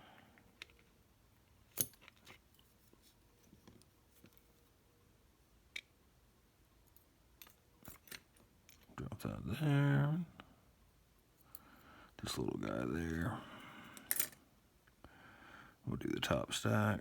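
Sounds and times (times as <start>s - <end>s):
small metal parts clicking: 14.0s - 14.4s.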